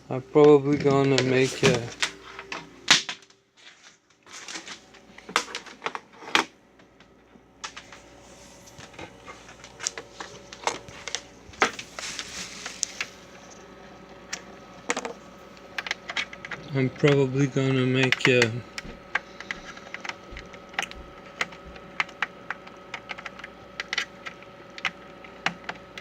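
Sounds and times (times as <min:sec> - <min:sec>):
computer keyboard typing clicks: 0:18.0 - 0:26.0.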